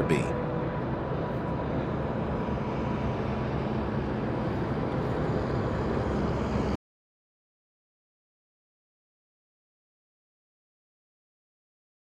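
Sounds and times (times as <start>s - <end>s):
low rumbling background noise: 0.0s - 6.8s.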